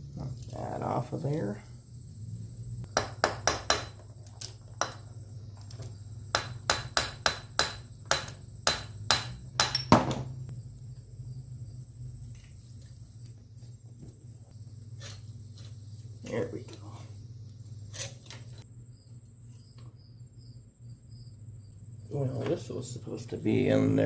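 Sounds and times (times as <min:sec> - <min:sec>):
steady low hum: 0:00.0 - 0:24.0
hammer striking metal: 0:02.9 - 0:04.0, 0:06.3 - 0:10.3.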